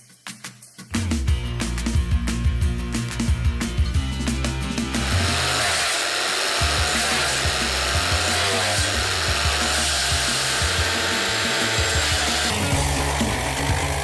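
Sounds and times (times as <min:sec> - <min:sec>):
background music: 0:00.0 - 0:14.0
machine grinding through wood: 0:04.8 - 0:14.0.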